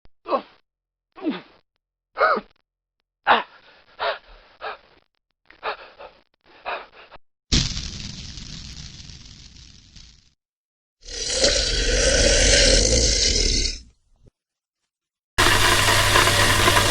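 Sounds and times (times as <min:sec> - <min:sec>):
person panting: 0:03.4 - 0:07.2.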